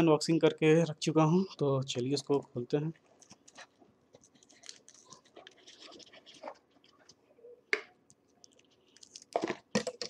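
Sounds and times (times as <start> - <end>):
packaging rustling: 3.0 - 7.2.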